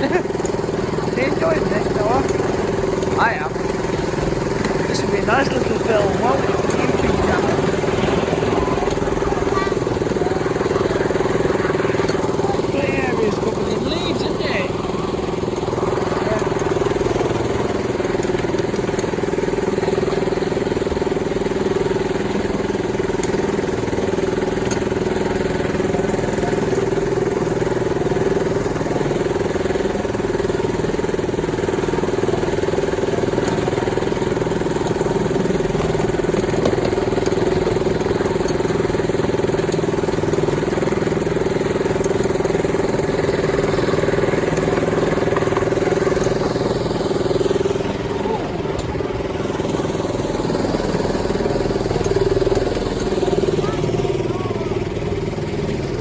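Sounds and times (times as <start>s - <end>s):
miniature locomotive engine running: 0.0s - 56.0s.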